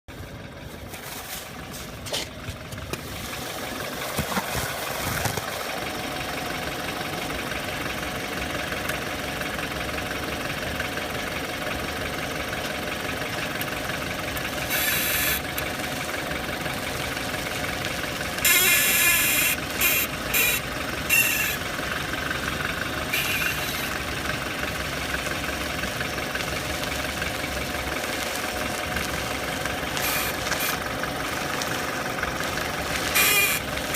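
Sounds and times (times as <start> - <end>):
car engine running: 0.1 - 33.9
sharp suspension creaks: 14.6 - 15.6, 18.4 - 21.7, 23.0 - 24.1, 29.8 - 31.0, 32.5 - 33.9.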